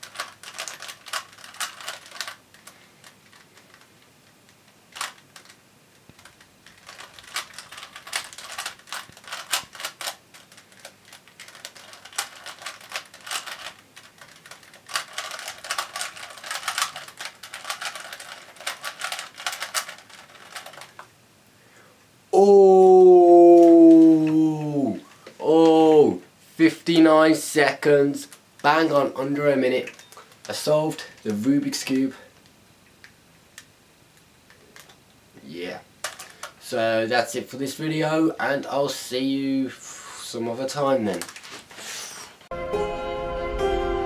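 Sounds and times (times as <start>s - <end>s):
puzzle cube clicking: 0.0s - 21.1s, 29.8s - 30.6s.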